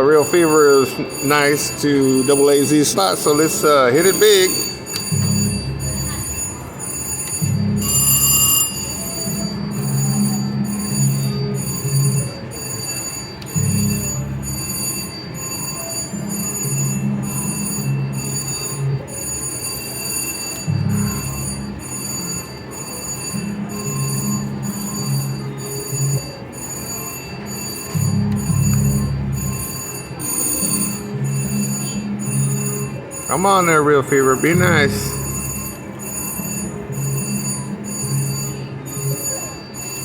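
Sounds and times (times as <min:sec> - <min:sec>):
low electronic tune: 0:00.0 - 0:12.4, 0:27.3 - 0:40.0
high electronic ringing: 0:00.0 - 0:40.0.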